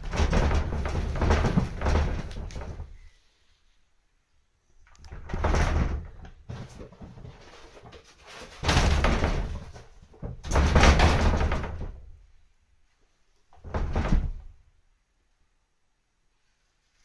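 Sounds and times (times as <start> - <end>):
sliding paper door rattling and banging: 0.0 - 3.1, 5.1 - 12.3, 13.5 - 14.6.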